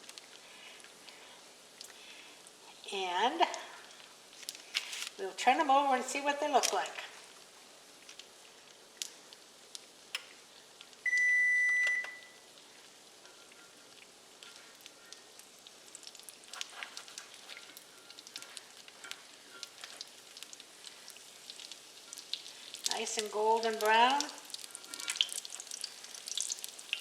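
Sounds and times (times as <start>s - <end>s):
oil popping and crackling: 0.0s - 2.6s, 3.4s - 5.2s, 6.6s - 11.1s, 12.4s - 27.0s
dough sizzling in oil: 0.0s - 27.0s
kitchen timer beep: 11.0s - 12.4s.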